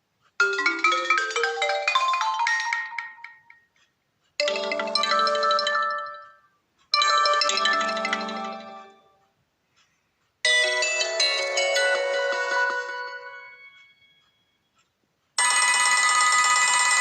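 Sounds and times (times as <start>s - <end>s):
melodic phone ringtone: 0.4s - 3.7s, 4.4s - 6.4s, 7.0s - 9.1s, 10.5s - 14.4s, 15.4s - 17.0s.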